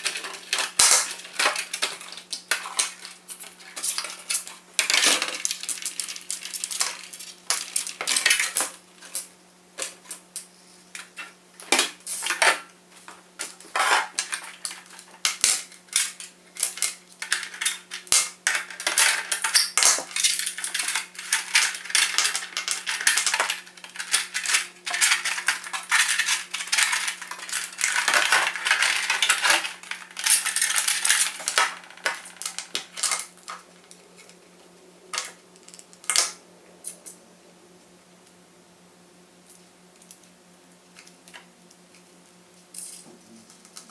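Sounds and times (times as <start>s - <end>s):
small hard parts clicking: 0.0s - 12.6s, 13.4s - 34.4s
faint steady hum: 0.0s - 43.9s.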